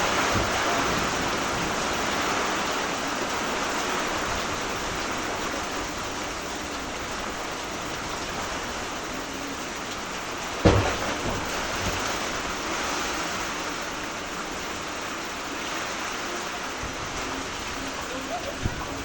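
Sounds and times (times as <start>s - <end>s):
heavy rain: 0.0s - 19.0s
sudden knock: 10.6s - 12.2s.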